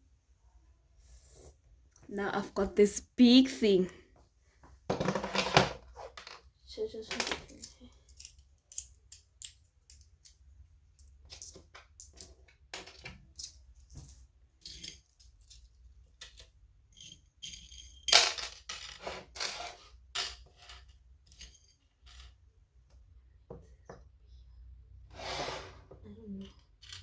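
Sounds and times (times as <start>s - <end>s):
small hard objects clicking and rattling: 14.6s - 19.0s, 26.3s - 27.0s.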